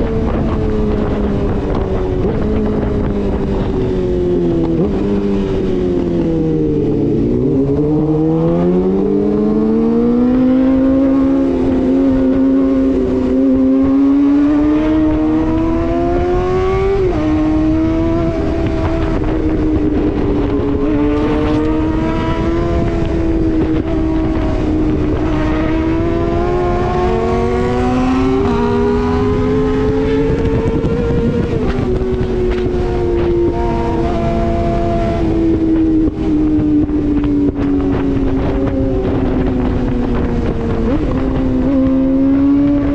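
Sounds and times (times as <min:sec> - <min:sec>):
motorcycle engine accelerating: 0:00.0 - 0:42.9.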